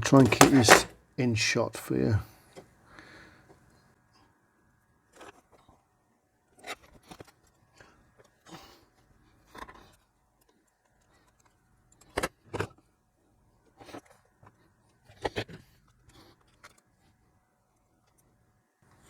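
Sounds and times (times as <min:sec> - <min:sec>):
small tools clicking and rustling: 0:00.0 - 0:01.0.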